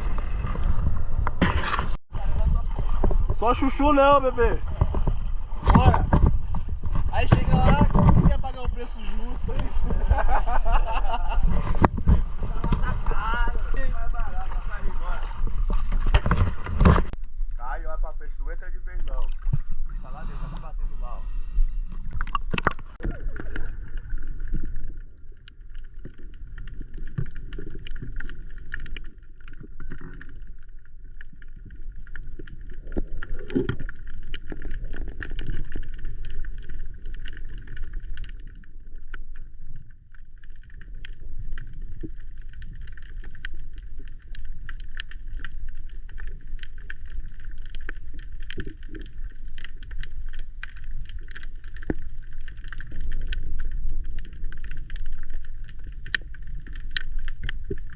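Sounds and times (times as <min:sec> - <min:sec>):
muffled underwater rumble: 0:00.0 - 0:57.9
faint underwater clicks: 0:21.4 - 0:57.9.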